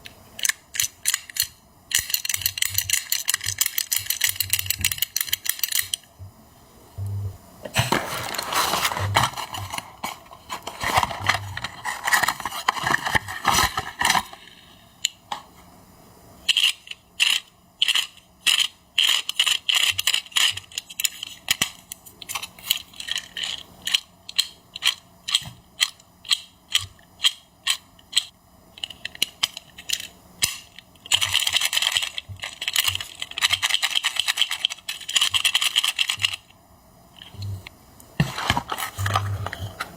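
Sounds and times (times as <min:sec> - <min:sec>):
packaging crinkling: 0:07.7 - 0:14.4.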